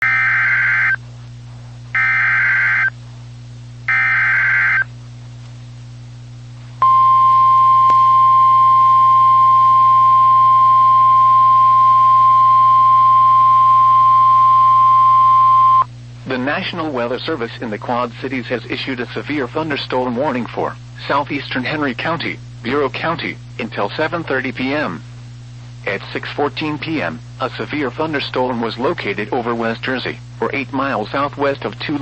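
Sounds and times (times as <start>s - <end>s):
steady alarm tone: 0.0s - 1.0s, 1.9s - 2.9s, 3.9s - 4.9s, 6.8s - 15.9s
low radio hum: 0.0s - 32.0s
alert data bursts: 2.0s - 2.9s, 3.9s - 4.9s.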